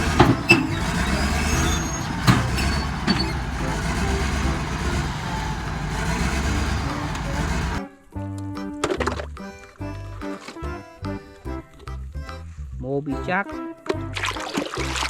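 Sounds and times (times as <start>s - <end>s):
heavy vehicle engine running: 0.0s - 7.8s.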